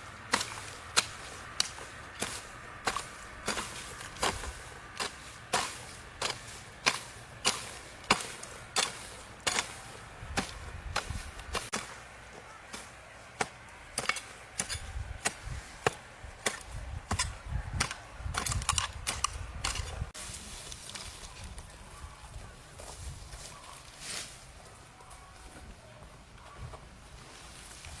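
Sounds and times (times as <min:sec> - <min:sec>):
hand tool striking wood: 0:00.3 - 0:12.0, 0:12.7 - 0:20.0.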